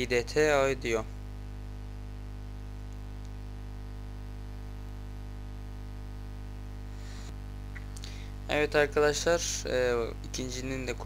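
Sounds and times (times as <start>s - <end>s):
low electrical hum: 0.0s - 11.0s.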